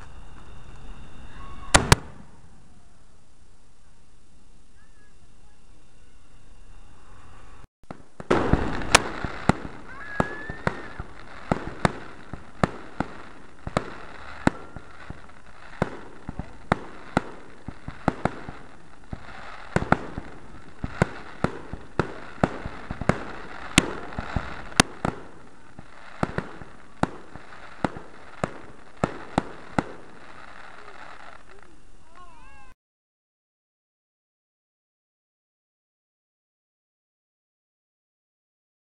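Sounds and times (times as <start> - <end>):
fireworks bangs and cracks: 0.0 - 2.6, 7.8 - 32.7.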